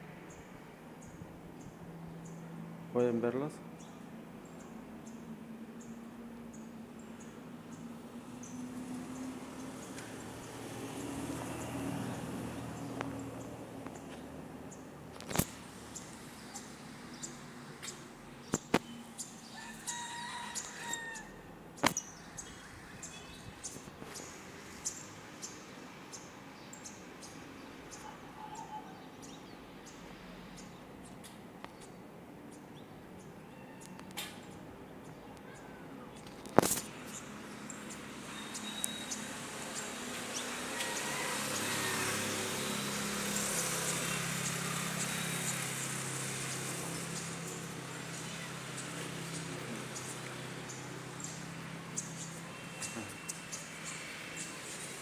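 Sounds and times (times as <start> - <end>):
small birds chirping: 0.2 - 55.0
canaries chirping: 37.0 - 54.9.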